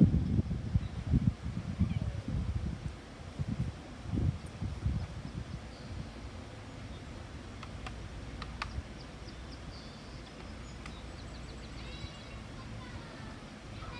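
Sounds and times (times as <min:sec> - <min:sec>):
birds chirping: 0:03.8 - 0:13.9
sharp clicks: 0:07.6 - 0:08.8.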